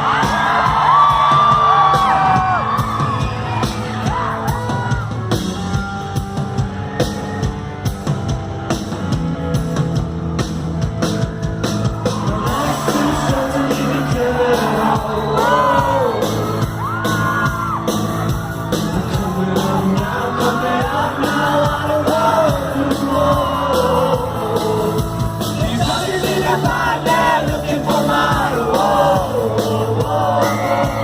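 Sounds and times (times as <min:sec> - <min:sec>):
fans yelling and whooping: 0:00.0 - 0:07.9, 0:11.7 - 0:31.0
live rock band: 0:00.0 - 0:31.0
person singing: 0:12.2 - 0:16.6, 0:18.8 - 0:31.0.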